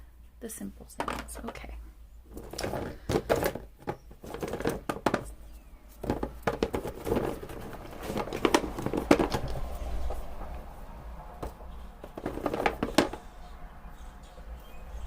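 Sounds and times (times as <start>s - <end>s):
paper rustling and crinkling: 2.3s - 13.2s.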